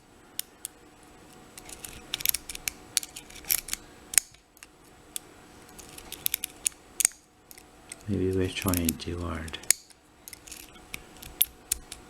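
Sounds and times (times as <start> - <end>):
lock pick clicking in padlock: 1.6 - 4.4.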